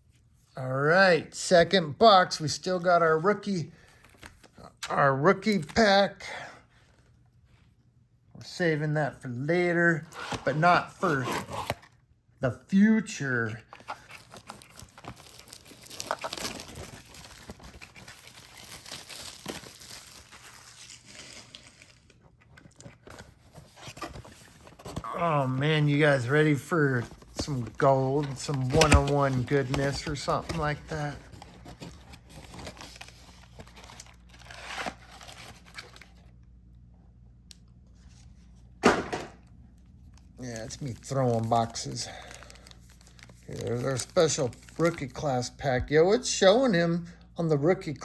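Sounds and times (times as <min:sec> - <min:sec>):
packaging crinkling and tearing: 0:13.7 - 0:36.3, 0:40.1 - 0:45.4.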